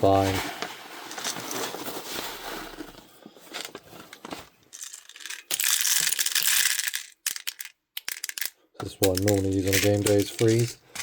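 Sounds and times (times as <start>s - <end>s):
plastic packaging crinkling: 3.6s - 11.0s
plastic pellets rattling as they pour: 4.7s - 11.0s.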